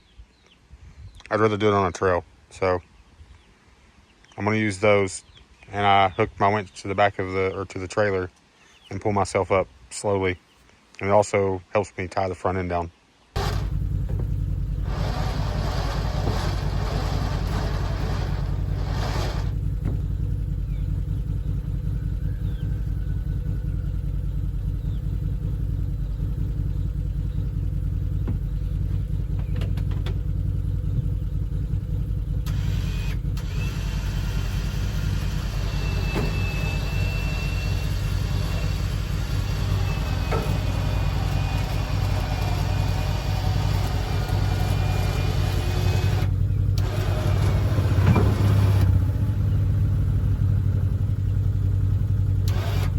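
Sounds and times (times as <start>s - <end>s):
vehicle engine idling: 13.4s - 52.9s
faint high whine: 32.4s - 47.0s.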